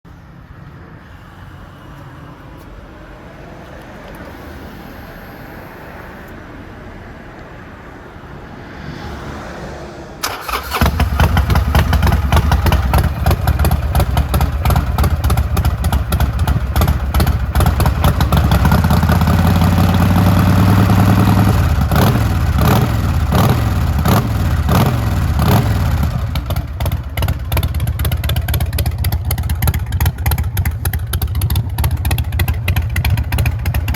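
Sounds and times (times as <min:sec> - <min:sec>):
motorcycle engine starting and revving: 0:10.2 - 0:33.9.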